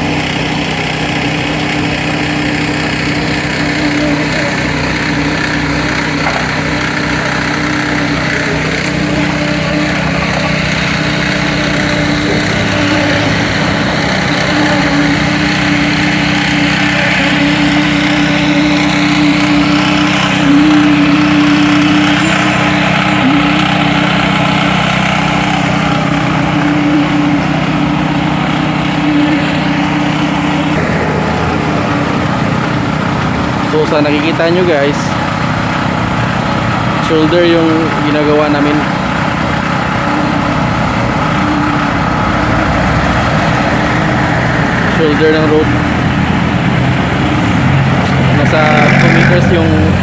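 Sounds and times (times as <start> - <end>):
small petrol engine humming: 0.0 - 50.0.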